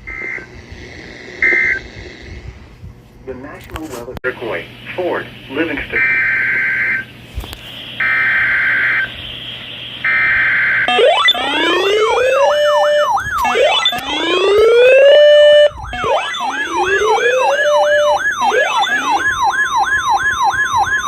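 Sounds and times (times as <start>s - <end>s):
siren wails and yelps: 0.0s - 2.5s, 8.0s - 21.0s
buzzing digital header tones: 0.0s - 2.8s, 10.0s - 20.7s.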